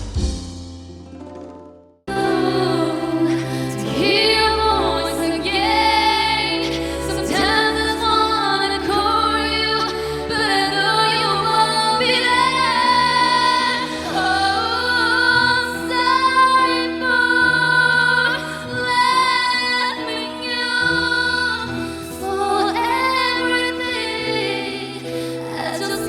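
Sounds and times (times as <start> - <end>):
backing music: 0.0 - 26.0
woman singing with vibrato: 2.1 - 26.0.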